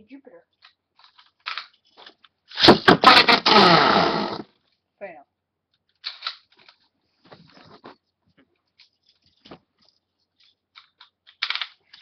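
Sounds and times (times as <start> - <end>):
plastic spinning top clicks and rattles: 10.7 - 12.0.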